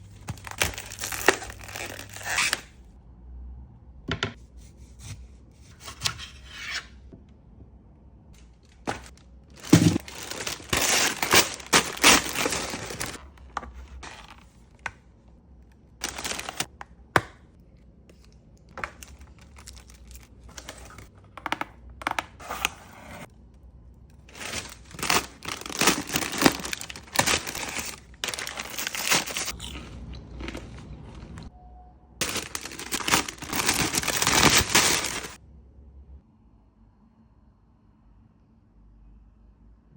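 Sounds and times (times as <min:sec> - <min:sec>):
food packaging tearing and crinkling: 0:00.0 - 0:02.8, 0:08.4 - 0:14.9, 0:16.0 - 0:16.7, 0:18.1 - 0:21.1, 0:24.2 - 0:31.5, 0:32.2 - 0:35.4.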